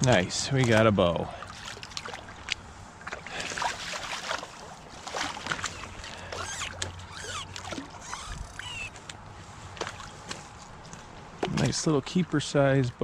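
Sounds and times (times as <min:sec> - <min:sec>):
water splashing and dripping: 0:00.0 - 0:09.2.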